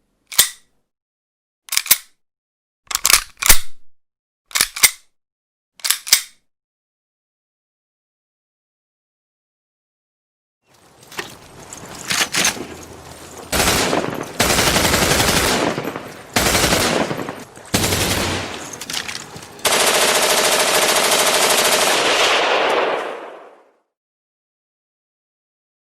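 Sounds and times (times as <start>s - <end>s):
rapid gunfire bursts: 13.5s - 18.8s, 19.6s - 23.0s
gunshots: 13.5s - 23.6s.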